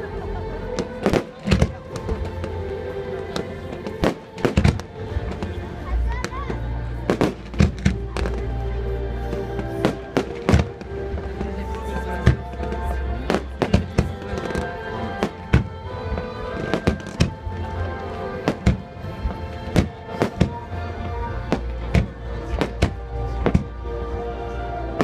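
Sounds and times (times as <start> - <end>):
music with long held notes: 0.0 - 25.0
fireworks bangs: 3.4 - 5.5.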